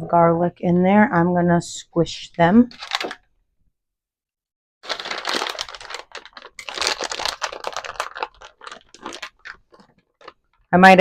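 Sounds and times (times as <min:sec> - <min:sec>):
garlic cloves crunching: 0:04.9 - 0:10.4.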